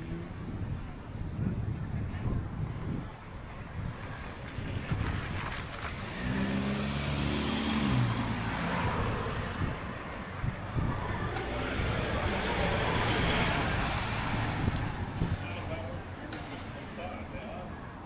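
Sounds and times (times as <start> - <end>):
car engine passing by: 4.9 - 16.7.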